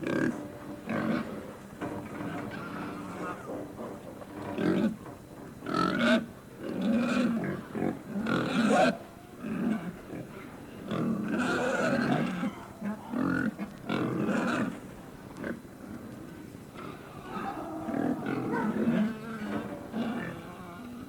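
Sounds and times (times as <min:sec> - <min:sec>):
animal cries: 0:11.3 - 0:14.8, 0:16.9 - 0:21.0.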